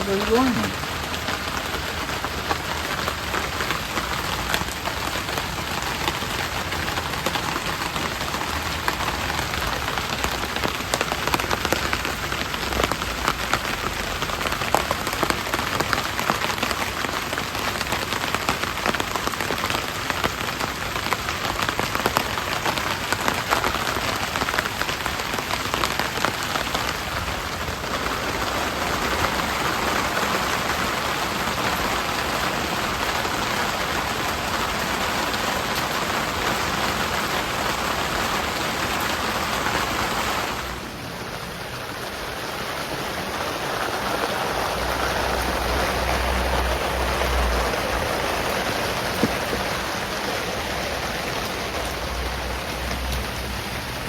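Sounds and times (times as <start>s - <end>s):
raindrops tapping close by: 0.0s - 54.0s
steady rain falling: 0.0s - 54.0s.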